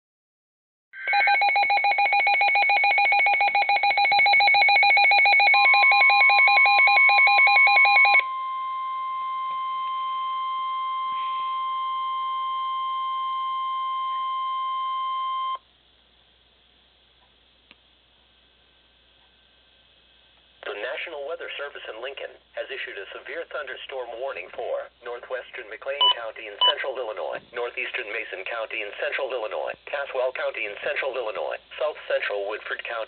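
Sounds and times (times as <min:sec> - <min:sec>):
steady warning alarm tone: 0:01.0 - 0:15.6.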